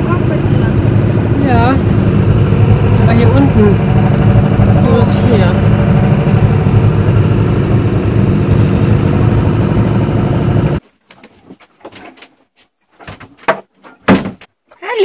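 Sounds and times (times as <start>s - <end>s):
boat engine running: 0.0s - 10.8s.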